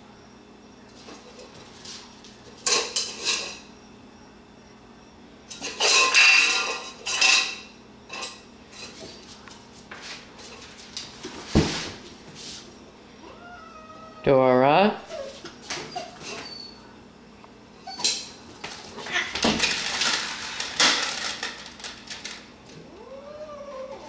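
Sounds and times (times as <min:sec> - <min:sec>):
dog and kitten scuffling on floor: 0:00.9 - 0:03.5, 0:08.8 - 0:12.8, 0:15.1 - 0:16.5.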